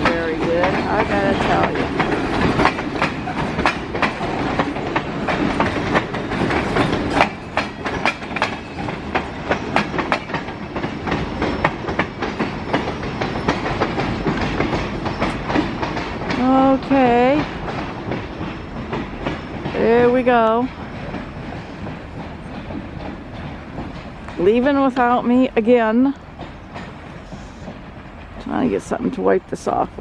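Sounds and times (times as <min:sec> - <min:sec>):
freight train rumble: 0:00.0 - 0:30.0
train wheels clicking over rail joints: 0:00.0 - 0:30.0.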